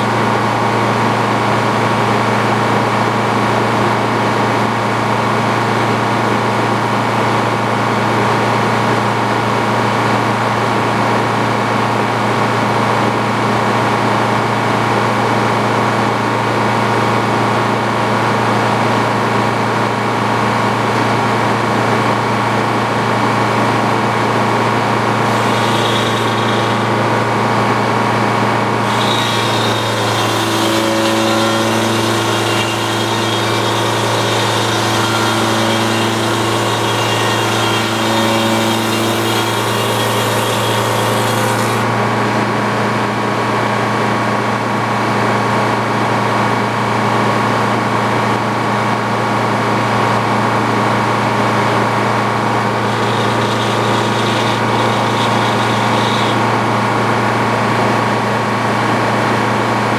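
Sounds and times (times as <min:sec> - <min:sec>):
sawmill engine droning: 0:15.8 - 0:43.2, 0:49.8 - 0:59.9.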